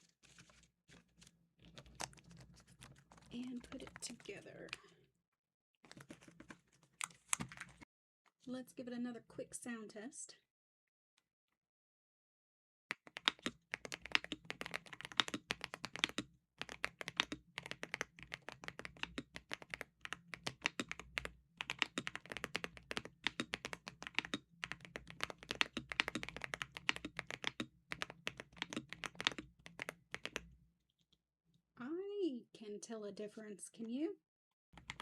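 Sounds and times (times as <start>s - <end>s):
mechanical keyboard typing: 3.2s - 4.8s, 12.9s - 30.5s, 34.8s - 35.0s.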